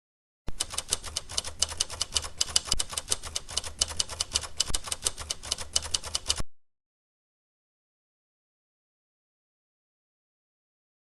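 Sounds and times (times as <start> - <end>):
rapid irregular clicking: 0.5 - 6.4.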